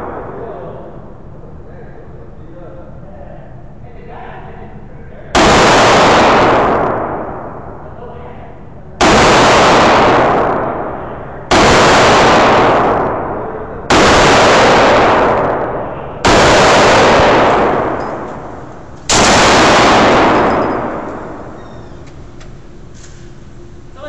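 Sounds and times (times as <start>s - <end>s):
pistol shots echoing indoors: 0.0s - 1.4s, 5.3s - 22.8s.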